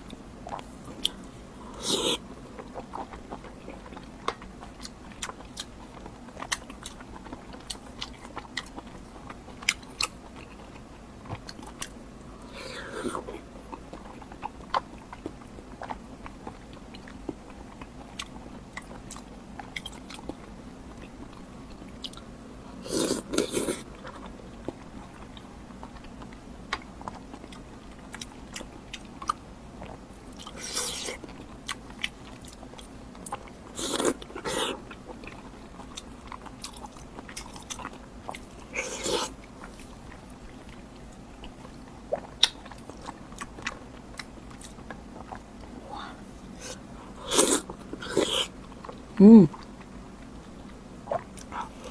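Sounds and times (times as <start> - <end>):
person chewing food: 0.0 - 51.9
crunching or slurping: 0.5 - 2.2, 11.4 - 13.4, 22.8 - 24.2, 30.3 - 35.4, 36.6 - 40.7, 44.6 - 49.6.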